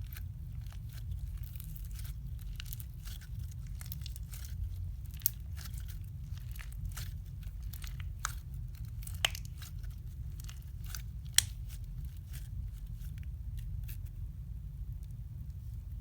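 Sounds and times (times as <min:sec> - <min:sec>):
steady low hum: 0:00.0 - 0:16.0
slime clicking and popping: 0:01.5 - 0:11.8.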